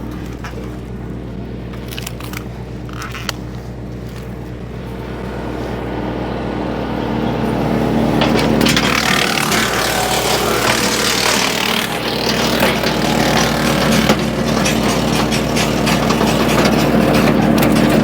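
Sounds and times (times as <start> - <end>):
tractor engine drone: 0.0 - 18.0
wood chipper running: 0.0 - 18.0.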